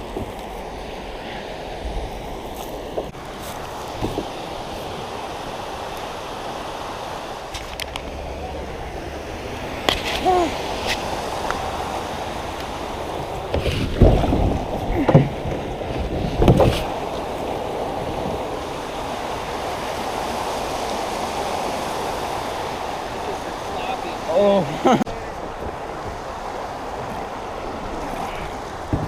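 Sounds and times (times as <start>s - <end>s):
creek water rushing: 0.0s - 29.0s
knocks and thumps: 13.5s - 16.8s.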